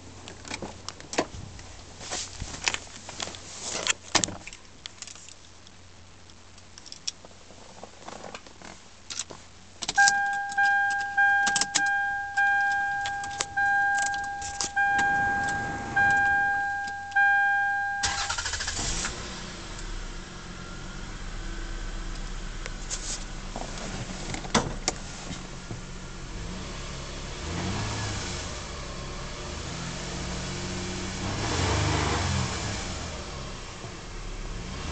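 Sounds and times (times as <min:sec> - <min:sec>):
car engine starting and running: 0:09.0 - 0:34.9
car warning chime: 0:10.0 - 0:18.8.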